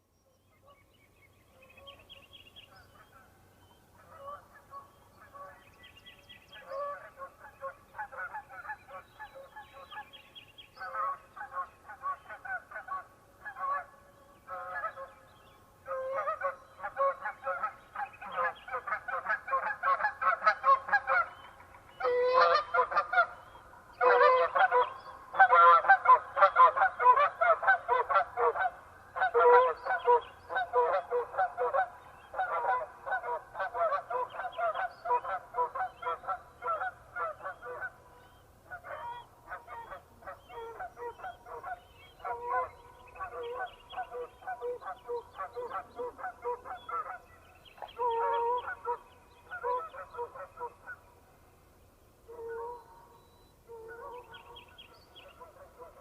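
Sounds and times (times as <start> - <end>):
geese honking: 15.8 - 47.2, 47.8 - 51.1.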